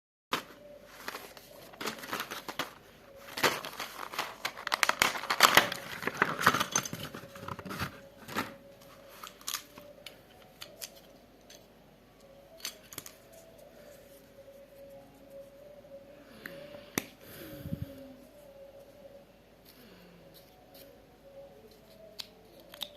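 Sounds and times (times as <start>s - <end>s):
packaging rustling and tearing: 0.3s - 9.9s.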